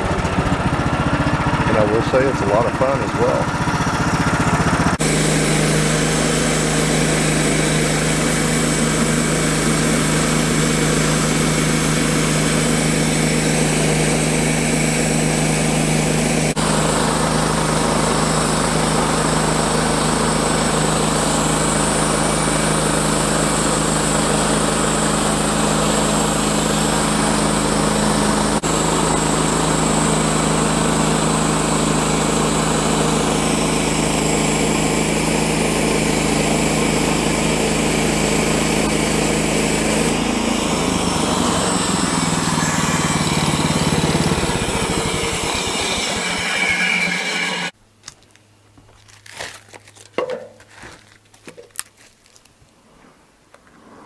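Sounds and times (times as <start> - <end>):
small gasoline engine running: 0.0 - 47.8
band blade sawing through log: 1.7 - 3.5, 4.8 - 16.7, 20.6 - 47.8.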